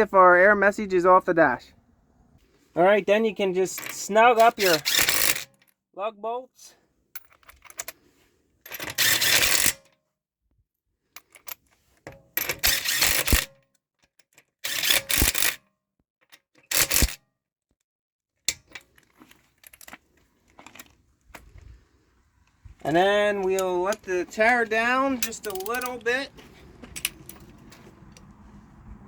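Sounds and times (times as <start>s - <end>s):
metal clicks: 23.4s - 28.4s.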